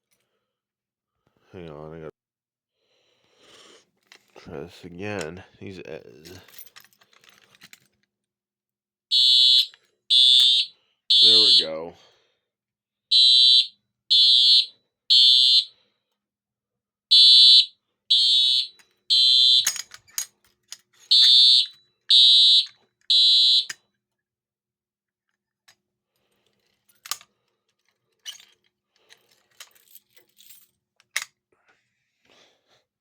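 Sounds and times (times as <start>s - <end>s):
fire alarm horn blasts: 9.1s - 11.8s, 13.1s - 15.7s, 17.1s - 19.7s, 21.1s - 23.7s.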